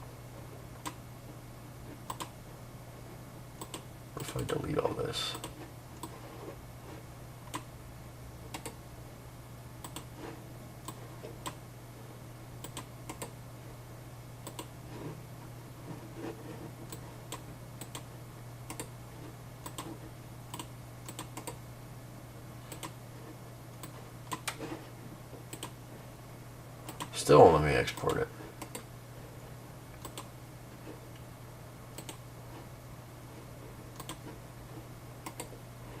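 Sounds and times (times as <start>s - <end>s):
steady low hum: 0.0s - 36.0s
mouse and keyboard clicks: 2.1s - 2.3s, 34.0s - 34.2s.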